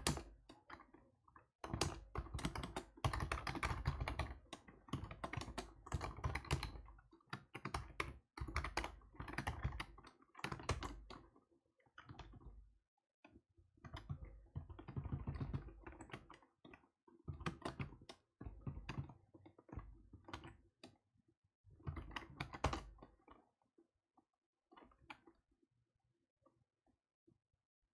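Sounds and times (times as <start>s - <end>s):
typing on computer keyboard: 0.0s - 0.4s, 1.6s - 11.1s.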